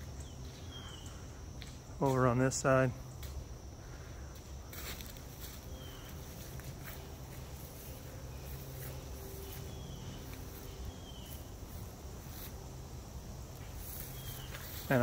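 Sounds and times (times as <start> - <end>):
high hiss: 6.4 - 15.0.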